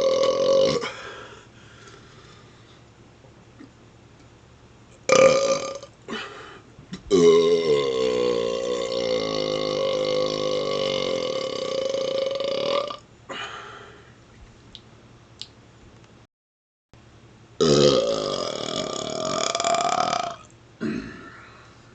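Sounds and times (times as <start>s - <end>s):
man burping loudly: 0.0s - 1.0s, 5.1s - 6.2s, 7.1s - 13.0s, 17.6s - 21.5s.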